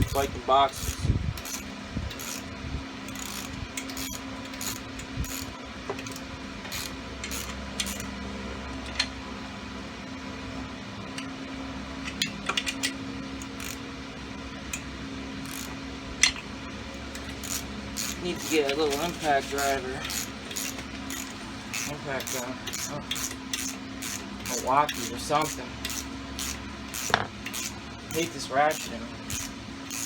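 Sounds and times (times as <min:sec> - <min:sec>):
hand ratchet clicking: 0:00.0 - 0:02.4, 0:03.1 - 0:08.1, 0:12.1 - 0:13.8, 0:15.4 - 0:16.4, 0:17.1 - 0:30.0
steady low hum: 0:00.0 - 0:30.0.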